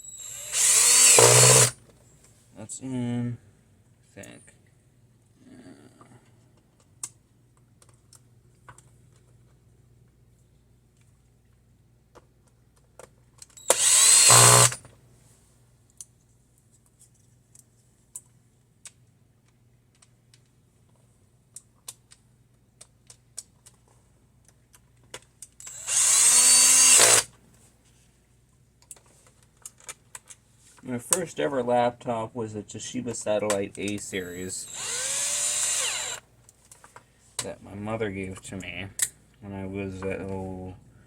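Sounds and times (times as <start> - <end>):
electric screwdriver whirring: 0.1 - 1.8, 13.6 - 14.8, 25.6 - 27.3, 34.2 - 36.2
small clicks of screws and parts: 6.0 - 10.2, 12.1 - 14.9, 15.8 - 27.4, 28.8 - 31.2, 34.7 - 37.5.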